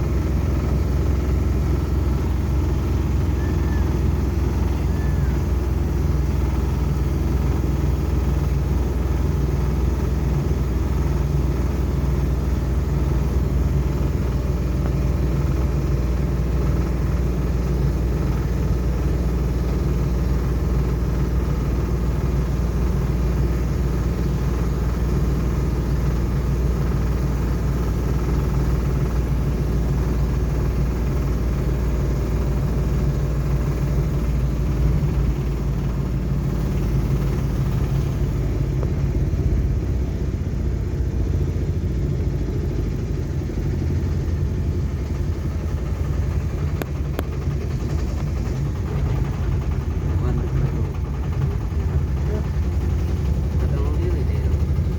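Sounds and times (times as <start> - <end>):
vehicle engine rumble: 0.0 - 54.9.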